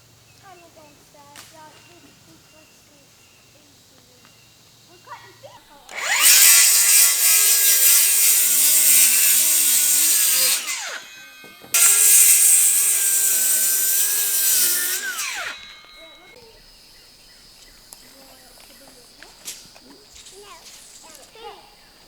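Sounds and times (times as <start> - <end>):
power saw cutting wood: 5.9 - 16.5.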